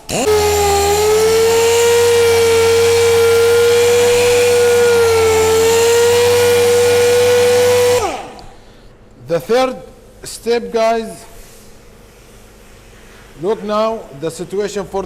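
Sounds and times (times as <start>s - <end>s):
orbital sander whining: 0.0s - 8.6s.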